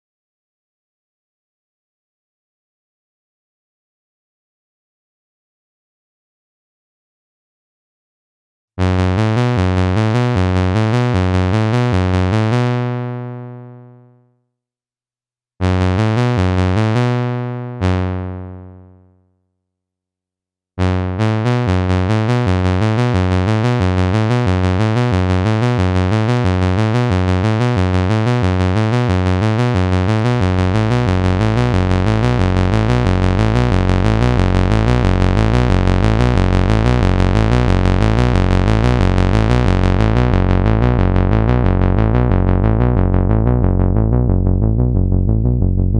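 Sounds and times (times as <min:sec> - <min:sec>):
synthesizer bass sequence: 0:08.8 - 0:13.4, 0:15.6 - 0:18.6, 0:20.8 - 0:45.9.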